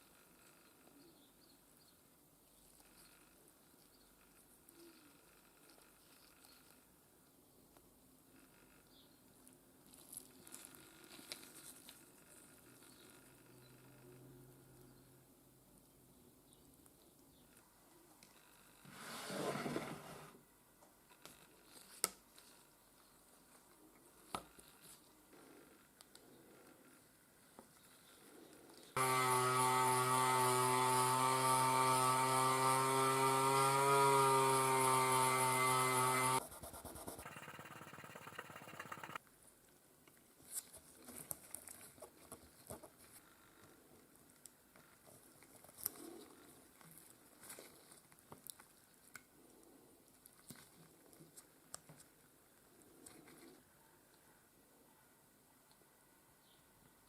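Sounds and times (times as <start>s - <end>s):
small tools clicking: 37.2s - 39.2s.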